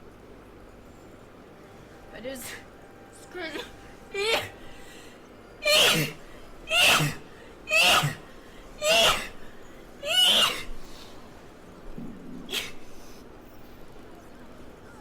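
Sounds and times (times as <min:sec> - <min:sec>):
girl sneezing: 0:05.6 - 0:08.2, 0:08.8 - 0:09.4, 0:10.1 - 0:10.7.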